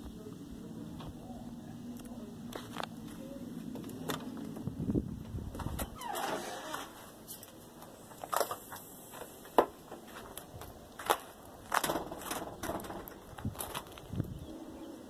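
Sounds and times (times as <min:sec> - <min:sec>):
footsteps crunching on frozen snow: 0:10.0 - 0:11.8.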